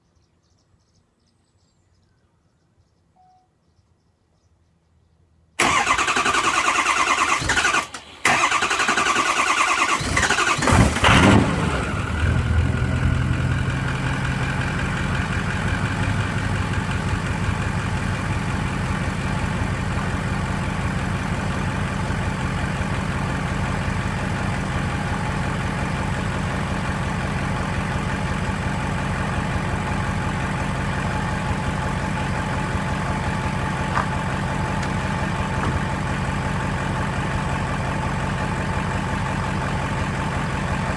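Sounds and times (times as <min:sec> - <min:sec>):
engine starter cranking: 0:05.6 - 0:12.1
diesel engine idling: 0:05.6 - 0:40.9.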